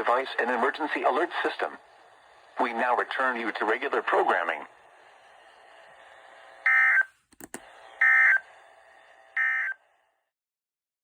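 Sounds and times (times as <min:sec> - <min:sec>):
faint radio hiss: 0:00.0 - 0:06.8, 0:07.6 - 0:10.3.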